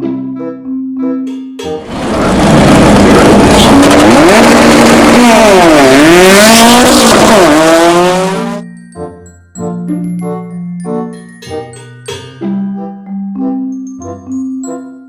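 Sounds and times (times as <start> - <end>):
loud race car engine: 1.8 - 8.6
road noise: 1.8 - 8.6.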